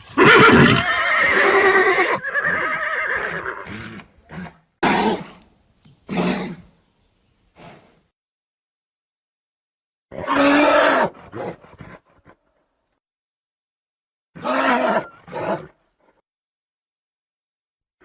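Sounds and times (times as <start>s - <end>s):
horse whinnying: 0.1s - 5.2s, 14.4s - 15.7s.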